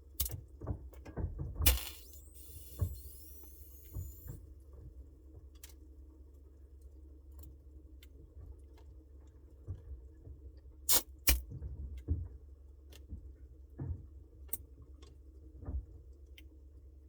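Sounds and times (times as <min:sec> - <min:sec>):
refrigerator humming: 0:01.6 - 0:04.4
sharp clicks and ticks: 0:01.7 - 0:04.4.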